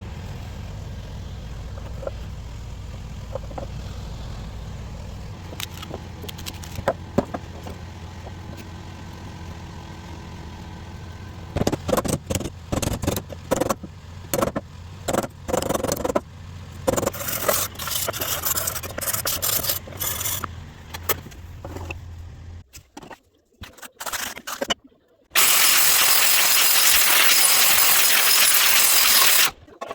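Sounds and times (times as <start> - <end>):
steady low hum: 0.0 - 11.9
knife blade scraping: 16.9 - 21.9.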